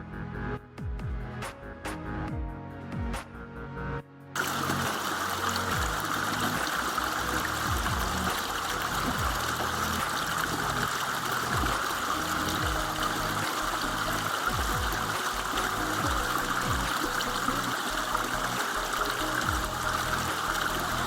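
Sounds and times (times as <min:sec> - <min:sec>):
electronic music: 0:00.0 - 0:21.0
stream water flowing: 0:04.4 - 0:21.0.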